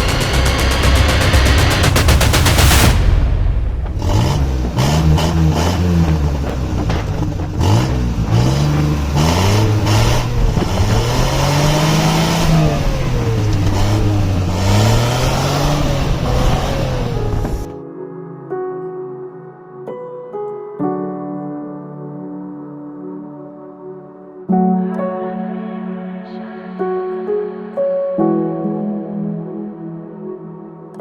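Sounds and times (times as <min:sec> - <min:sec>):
engine revving: 0:00.0 - 0:17.7
exhaust cracks: 0:00.0 - 0:17.7.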